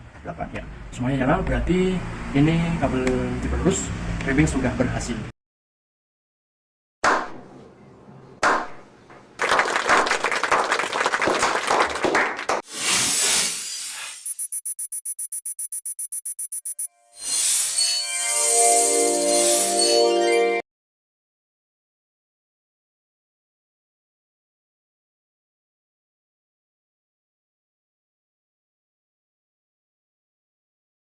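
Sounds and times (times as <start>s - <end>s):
music with ringing tones: 14.3s - 20.6s.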